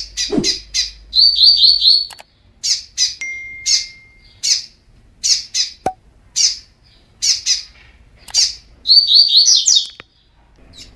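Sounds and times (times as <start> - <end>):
bird whistled song: 0.0 - 7.7, 8.3 - 10.1
bird harsh chip calls: 0.0 - 10.0.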